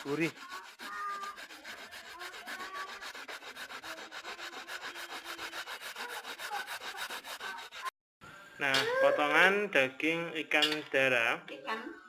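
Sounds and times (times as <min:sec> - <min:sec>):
coconut rasping on a grater: 0:00.0 - 0:07.9.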